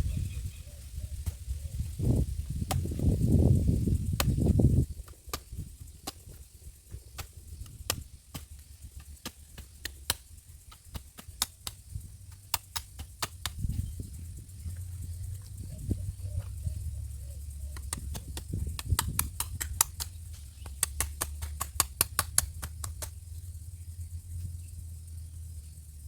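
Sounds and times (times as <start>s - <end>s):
low rumble: 11.7s - 26.0s.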